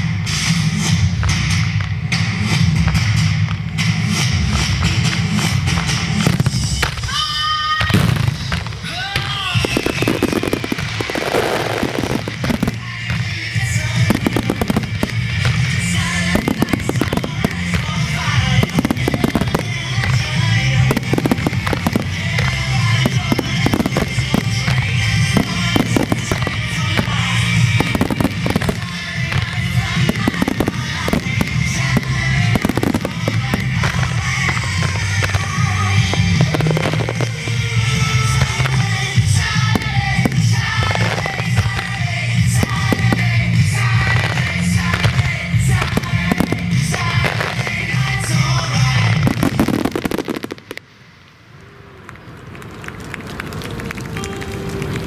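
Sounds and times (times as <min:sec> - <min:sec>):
fireworks booming and crackling: 0:00.0 - 0:55.0
whistling firework shells: 0:04.9 - 0:50.8
rock song: 0:08.2 - 0:50.0.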